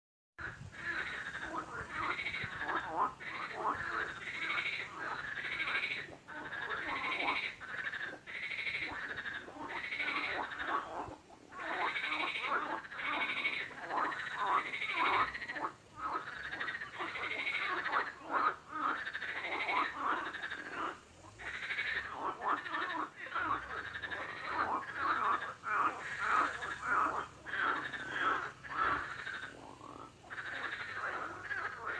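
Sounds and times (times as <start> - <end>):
frogs croaking: 0.4 - 31.9.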